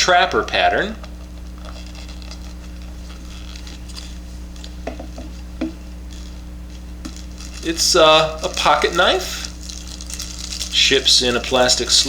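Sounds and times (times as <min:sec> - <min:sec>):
low electrical hum: 0:00.0 - 0:12.0
small knocks: 0:04.8 - 0:05.8.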